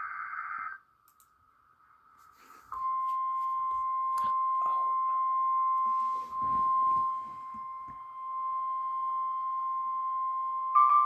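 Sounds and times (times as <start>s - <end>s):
steady warning alarm tone: 2.8s - 11.0s.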